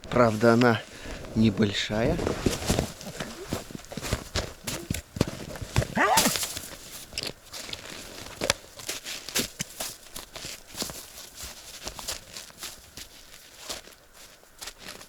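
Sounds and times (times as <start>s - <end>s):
footsteps crunching through snow: 0.0s - 15.0s.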